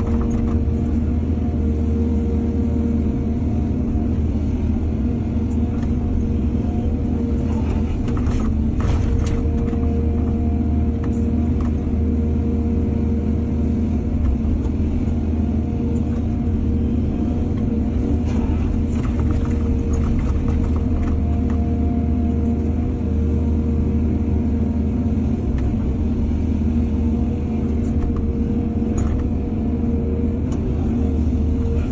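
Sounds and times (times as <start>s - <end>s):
diesel engine running: 0.0s - 31.9s.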